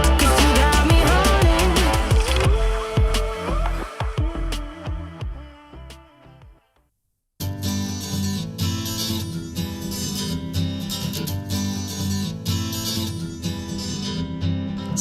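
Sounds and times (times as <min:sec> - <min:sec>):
strummed acoustic guitar music: 0:00.0 - 0:03.6, 0:07.4 - 0:15.0.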